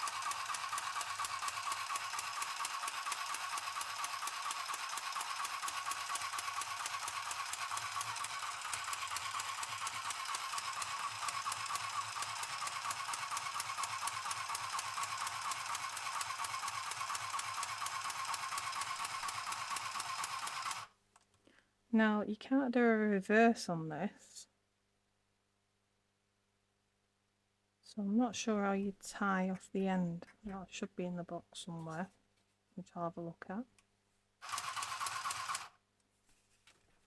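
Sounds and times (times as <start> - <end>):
sewing machine rattling: 0.0 - 20.9, 34.4 - 35.8.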